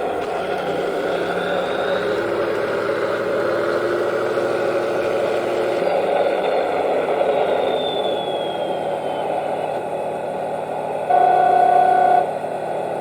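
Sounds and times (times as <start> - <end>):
simulated tank engine from speaker: 0.0 - 13.0
faint high whine: 7.5 - 13.0.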